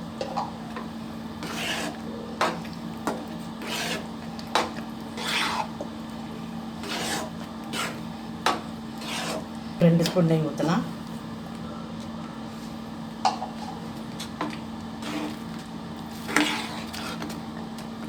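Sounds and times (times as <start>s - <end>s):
spatula scraping thick food in pan: 1.4s - 2.7s, 3.5s - 5.9s, 6.8s - 9.6s, 15.0s - 17.4s.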